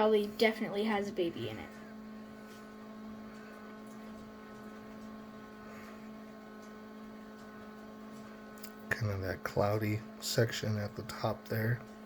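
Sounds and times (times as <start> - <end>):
faint electrical hum: 0.0 - 12.0.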